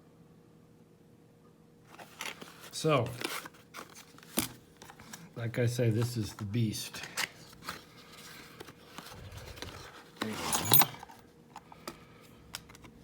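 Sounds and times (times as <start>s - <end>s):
padlock scraping: 9.6s - 11.2s.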